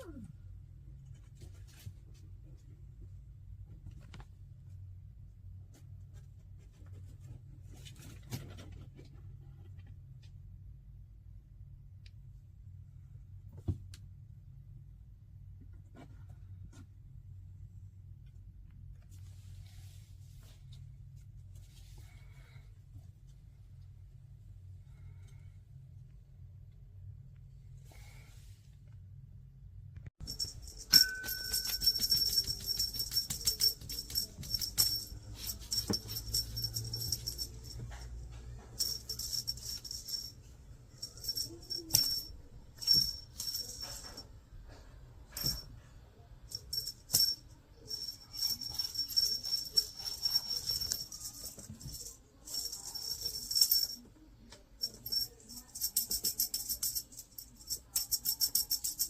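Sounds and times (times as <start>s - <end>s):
small bells jingling: 30.2s - 44.3s, 45.3s - 45.7s, 46.5s - 54.1s, 54.8s - 59.0s.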